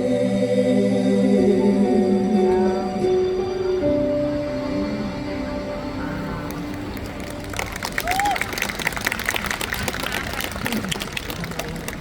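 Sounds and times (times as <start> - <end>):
held music chord: 0.0 - 6.9
audience clapping: 6.5 - 12.0.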